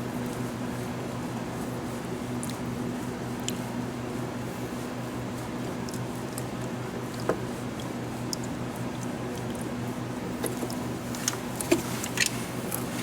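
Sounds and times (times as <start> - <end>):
small clicks and wet taps: 2.4 - 2.6, 5.8 - 9.7, 10.4 - 13.0
steady low hum: 4.1 - 13.0.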